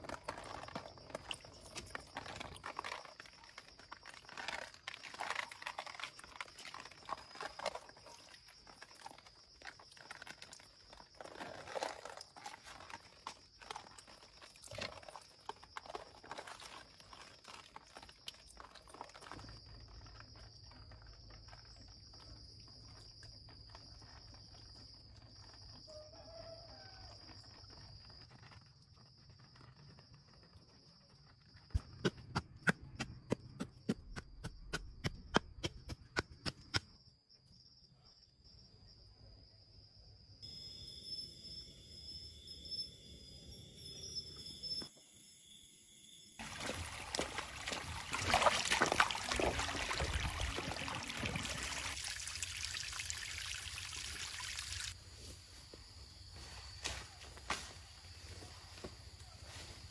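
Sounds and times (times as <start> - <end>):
high-pitched insect drone: 40.4 - 46.4
leaves and twigs crunching: 55.1 - 59.9.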